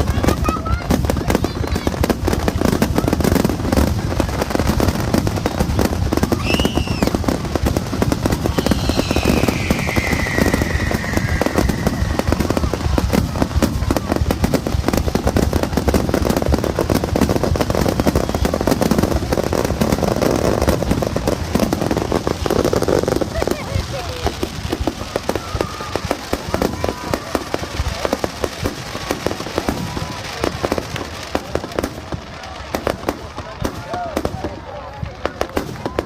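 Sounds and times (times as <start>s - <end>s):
fireworks bangs and crackling: 0.0s - 36.0s
firework whistle: 6.2s - 7.4s, 8.0s - 14.1s.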